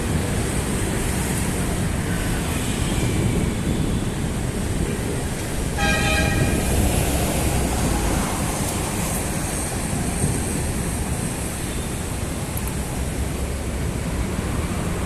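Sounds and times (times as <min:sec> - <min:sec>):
road traffic rumbling: 0:00.0 - 0:15.0
vehicle horn blast: 0:05.8 - 0:06.7.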